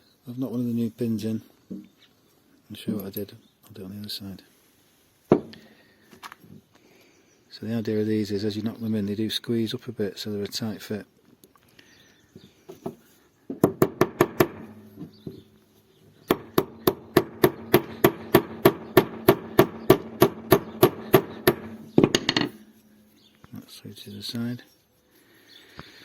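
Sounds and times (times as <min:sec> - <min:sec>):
hammer tapping metal pin: 0:16.3 - 0:22.8.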